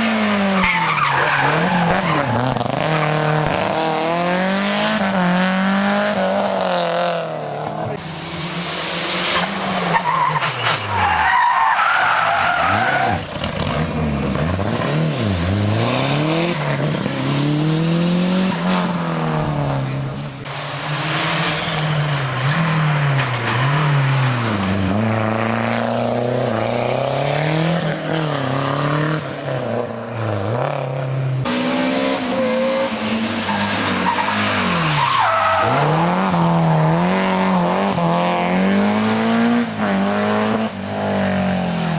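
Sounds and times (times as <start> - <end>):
rally car engine revving: 0.0 - 41.9
tyre squeal: 33.5 - 36.4.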